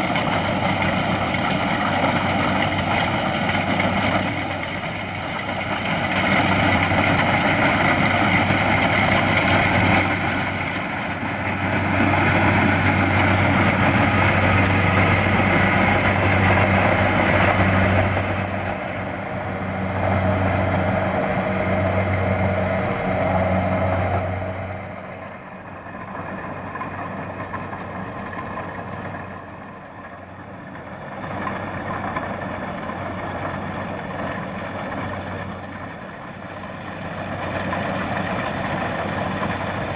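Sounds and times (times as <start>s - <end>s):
diesel engine hum: 0.0s - 39.9s
harvester machinery working: 0.0s - 39.9s.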